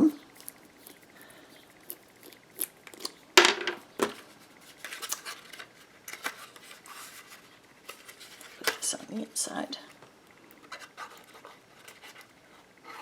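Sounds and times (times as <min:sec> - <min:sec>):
paper rustling and clicks: 0:04.0 - 0:08.9.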